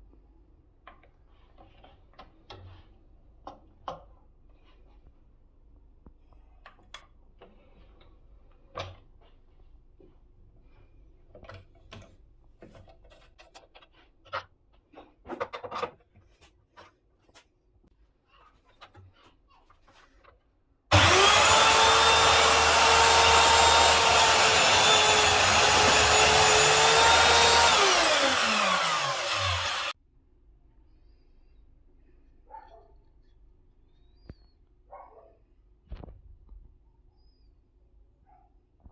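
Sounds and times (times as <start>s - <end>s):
miter saw motor whining: 20.9s - 29.9s.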